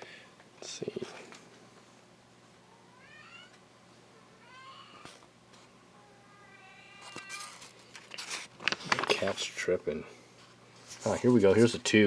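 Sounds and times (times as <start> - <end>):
cat meowing: 2.7 - 3.6, 4.2 - 5.2, 6.0 - 7.6.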